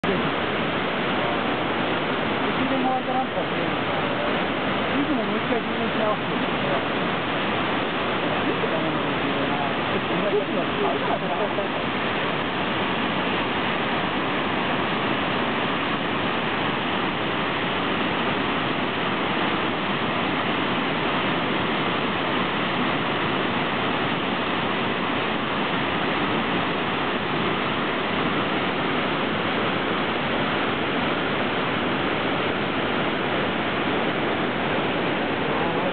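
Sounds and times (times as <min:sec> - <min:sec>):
waterfall pouring: 0:00.0 - 0:35.9.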